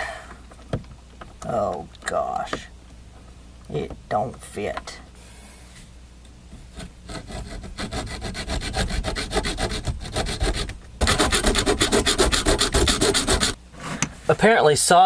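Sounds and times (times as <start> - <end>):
hand saw cutting copper pipe: 6.8 - 13.6.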